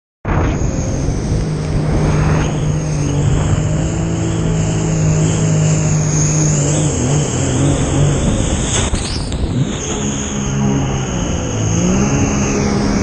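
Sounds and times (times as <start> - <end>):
jet ski engine: 0.3 - 13.0
water rushing: 0.3 - 13.0.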